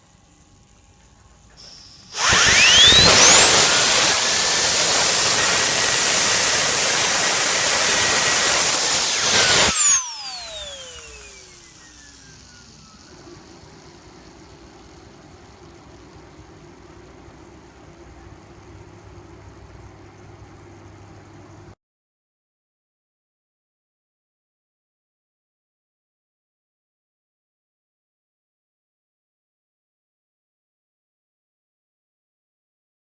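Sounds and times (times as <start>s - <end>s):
spinning wheel high whine: 1.5s - 20.0s
air jet hissing: 1.6s - 16.2s.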